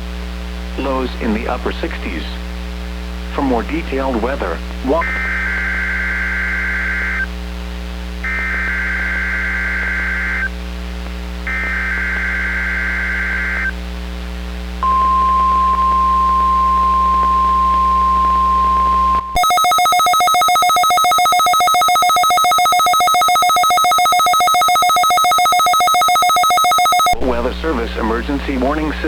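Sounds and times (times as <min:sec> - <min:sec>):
mains hum: 0:00.0 - 0:29.0
buzzy digital data screech: 0:05.0 - 0:07.3, 0:11.5 - 0:13.7
steady warning alarm tone: 0:14.8 - 0:27.2
rapidly pulsing ringing alert: 0:19.4 - 0:27.2.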